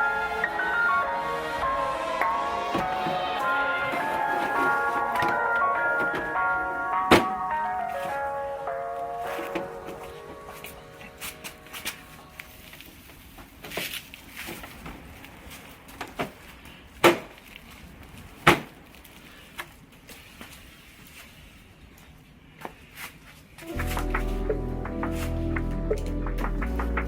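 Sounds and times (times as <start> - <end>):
background music: 0.0 - 12.7, 23.6 - 27.0.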